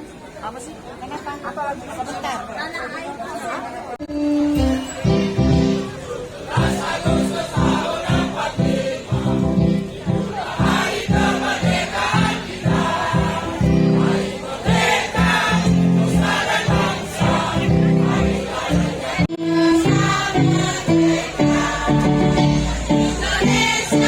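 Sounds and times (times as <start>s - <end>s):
choir singing: 4.1s - 24.0s.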